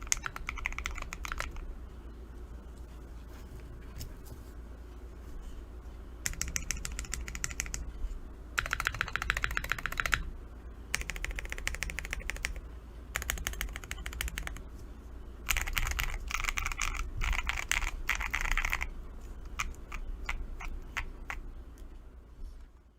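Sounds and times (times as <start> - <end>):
typing on mechanical keyboard: 0.0 - 1.7, 6.2 - 7.8, 8.6 - 10.3, 10.9 - 14.6, 15.5 - 18.9, 19.5 - 21.4.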